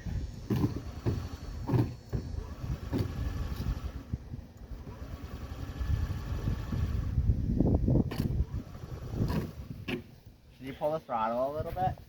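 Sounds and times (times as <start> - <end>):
moped engine cranking: 0.3 - 7.4, 8.0 - 9.9.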